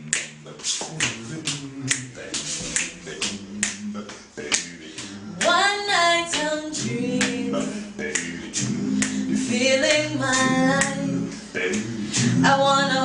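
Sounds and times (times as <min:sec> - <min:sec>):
finger snaps: 0:00.0 - 0:04.7
voices singing in harmony: 0:00.0 - 0:13.0.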